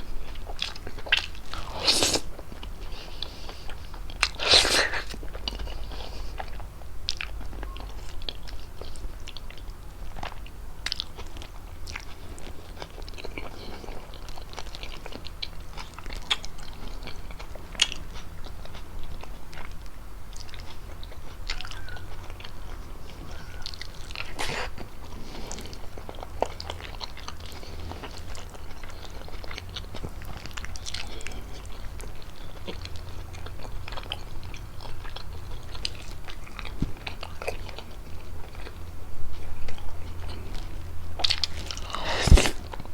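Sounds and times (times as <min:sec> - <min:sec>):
wet chewing and lip smacks: 0:00.0 - 0:42.9
sharp mouth clicks: 0:41.4 - 0:42.6.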